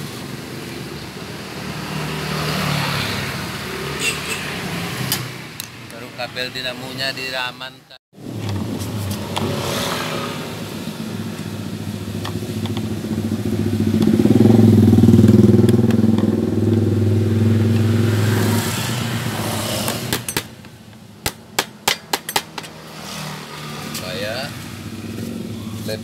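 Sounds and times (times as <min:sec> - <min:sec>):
vehicle engine passing: 0:00.5 - 0:05.6, 0:08.2 - 0:20.3, 0:22.7 - 0:26.0.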